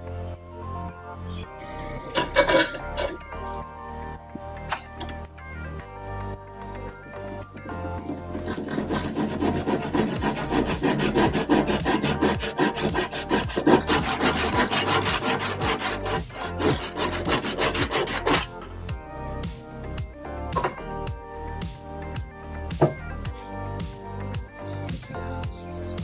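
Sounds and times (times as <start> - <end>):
hand tool scraping wood: 8.0 - 18.8.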